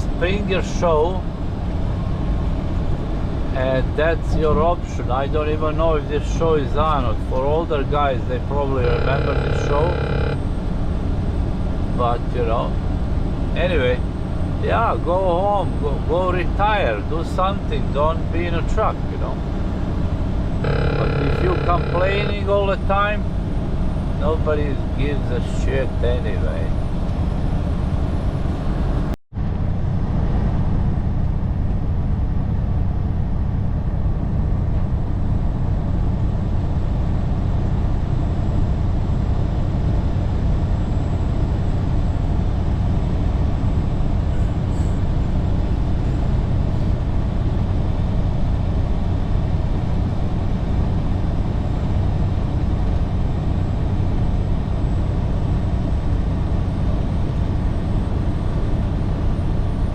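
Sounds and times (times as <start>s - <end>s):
road noise: 0.0s - 33.4s
truck engine drone: 0.0s - 59.9s.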